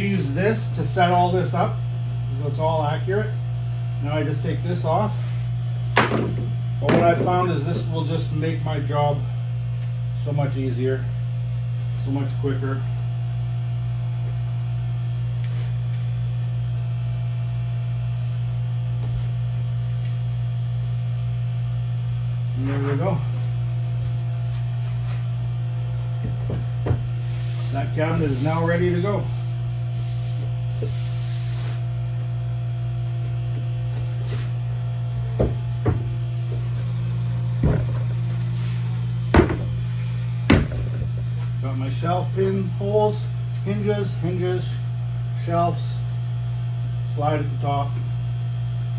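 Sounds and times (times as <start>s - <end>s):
low electrical hum: 0.0s - 48.9s
short knocks and bumps: 6.0s - 7.9s, 26.2s - 27.1s, 35.3s - 36.7s, 37.6s - 38.1s, 39.3s - 39.8s, 40.5s - 41.3s.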